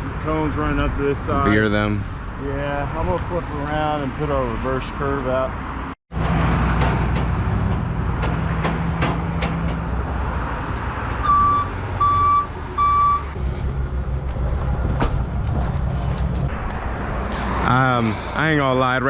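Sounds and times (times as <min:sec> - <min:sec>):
reverse alarm beeping: 0:11.2 - 0:13.4.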